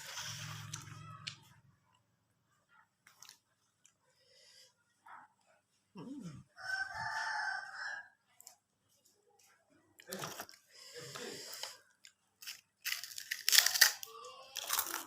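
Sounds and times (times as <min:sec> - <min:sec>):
rooster crowing: 0:06.6 - 0:08.2.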